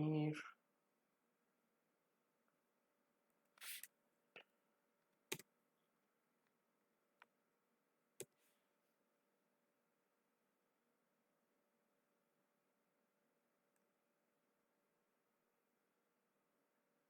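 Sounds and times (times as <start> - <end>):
computer mouse clicks: 5.3 - 5.5, 8.2 - 8.4.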